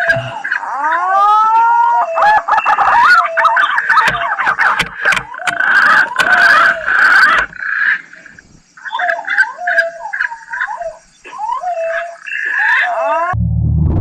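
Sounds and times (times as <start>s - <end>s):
low rumble: 13.4s - 14.0s.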